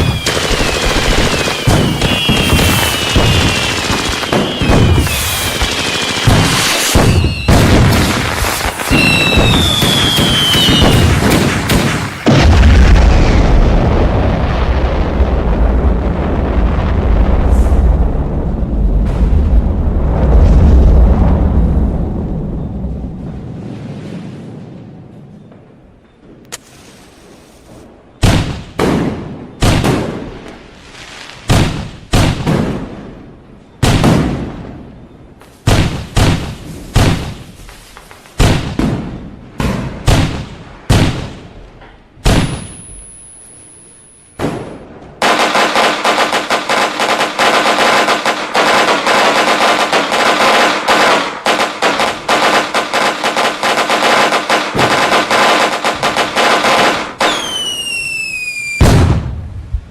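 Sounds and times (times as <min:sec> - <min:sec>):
crackle of rapid pops: 0:00.0 - 0:12.6, 0:45.2 - 0:58.0
fireworks bangs: 0:00.0 - 0:22.1, 0:23.6 - 0:59.9.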